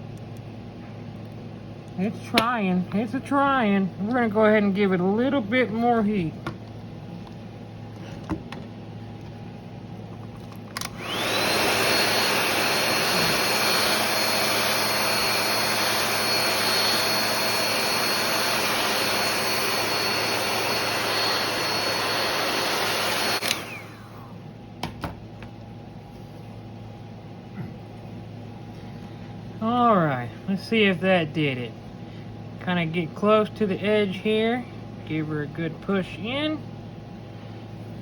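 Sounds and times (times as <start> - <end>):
hair dryer whining: 10.7 - 24.4.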